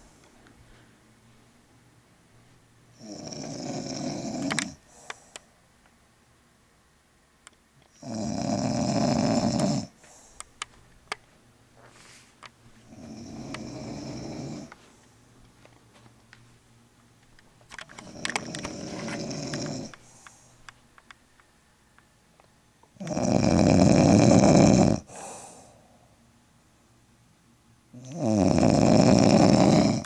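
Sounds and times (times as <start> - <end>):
woman snoring: 3.0 - 5.1, 8.0 - 10.0, 12.8 - 14.7, 18.0 - 20.0, 23.0 - 25.7, 28.0 - 30.0.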